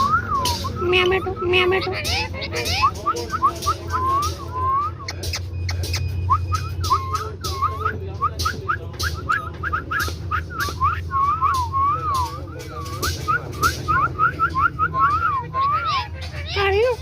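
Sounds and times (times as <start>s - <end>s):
bird whistling short notes: 2.8s - 15.5s.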